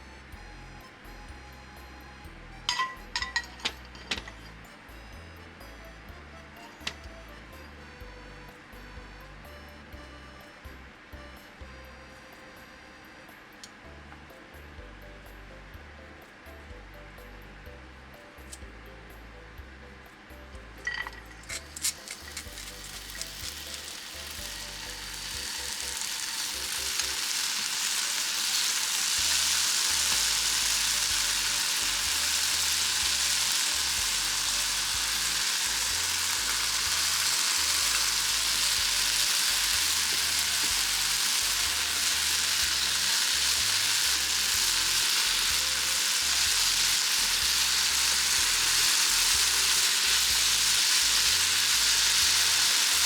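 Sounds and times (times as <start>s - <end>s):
vegetables sizzling in frying pan: 21.5s - 53.0s.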